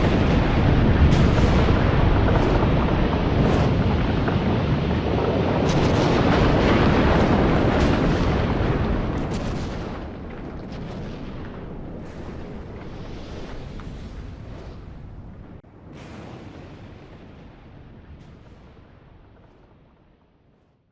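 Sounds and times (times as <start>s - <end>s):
magma bursting pops and cracks: 0.0s - 15.1s
lava fountain rushing: 0.0s - 19.8s.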